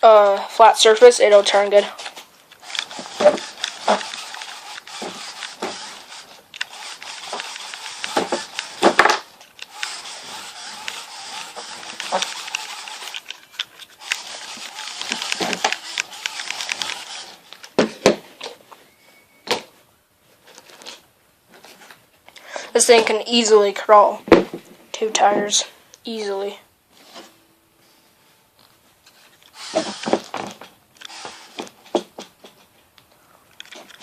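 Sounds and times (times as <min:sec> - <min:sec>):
toy car electric motor whir: 0:02.6 - 0:17.6, 0:29.4 - 0:31.8.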